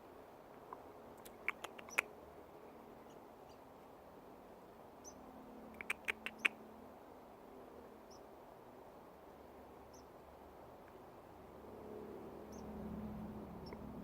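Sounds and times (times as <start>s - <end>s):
baby squirrel chirping: 1.3s - 2.1s, 5.8s - 6.6s.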